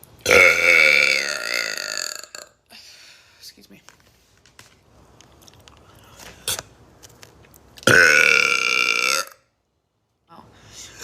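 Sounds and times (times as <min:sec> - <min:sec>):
loud drawn-out burp: 0:00.2 - 0:02.6, 0:07.8 - 0:09.5.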